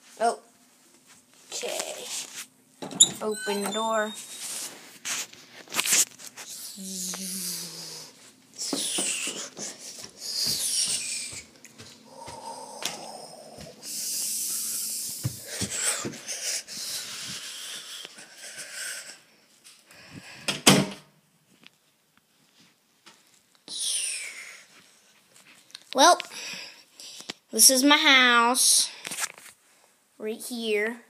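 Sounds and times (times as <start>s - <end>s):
scraping and rubbing: 3.6s - 6.6s.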